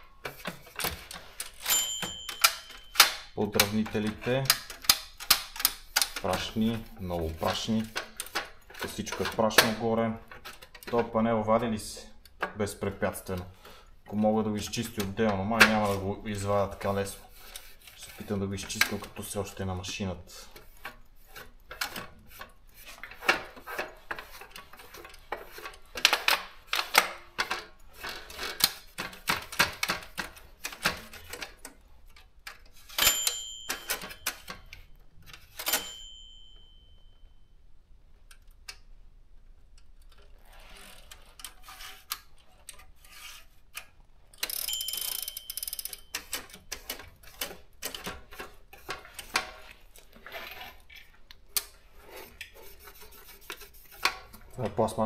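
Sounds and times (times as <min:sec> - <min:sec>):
typewriter mechanism clicking: 0:00.3 - 0:09.8
typewriter carriage bell ringing: 0:01.1 - 0:03.9, 0:32.9 - 0:34.8, 0:35.5 - 0:37.5, 0:44.4 - 0:46.8.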